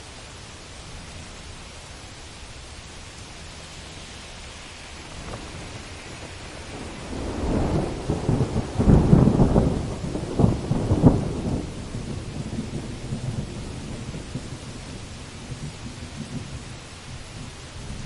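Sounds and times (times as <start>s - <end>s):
heavy rain falling: 0.0s - 18.0s
thunder rolling and cracking: 5.1s - 16.8s.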